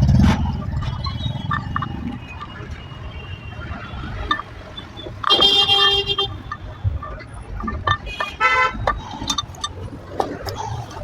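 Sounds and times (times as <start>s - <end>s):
road noise: 0.0s - 11.0s
vehicle horn honks: 5.2s - 6.5s, 8.1s - 8.8s.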